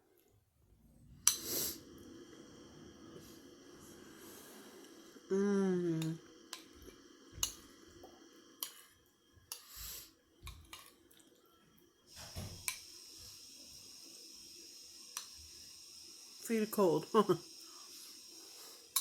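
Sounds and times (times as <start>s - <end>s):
woman humming: 5.2s - 6.3s.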